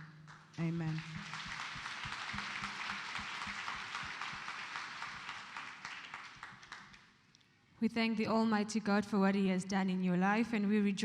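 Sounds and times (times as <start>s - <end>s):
congregation applauding: 0.6s - 7.1s.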